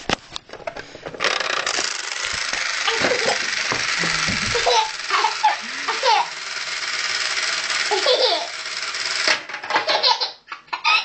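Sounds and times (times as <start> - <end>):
toaster timer rattling buzz: 1.2 - 10.2
baby laughing: 2.9 - 6.3, 7.9 - 8.5, 9.7 - 11.0.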